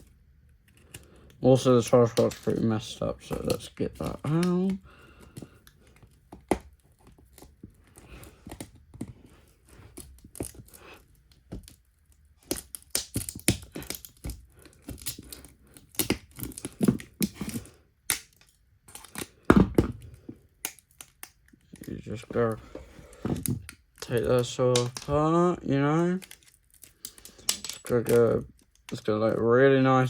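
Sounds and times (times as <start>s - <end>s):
clicks scrapes and tearing rasps: 9.9s - 19.4s, 20.6s - 22.6s, 26.0s - 29.0s.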